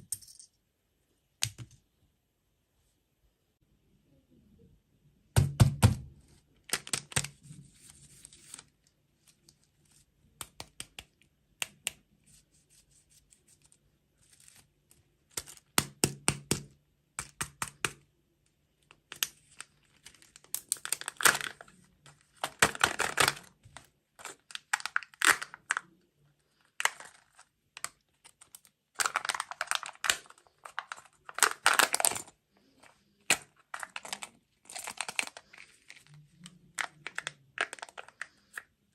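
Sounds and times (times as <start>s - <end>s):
packaging tearing and crinkling: 6.7s - 7.4s, 19.6s - 21.7s, 22.4s - 23.6s, 24.2s - 25.8s, 28.3s - 32.3s, 33.3s - 36.0s, 36.8s - 38.4s.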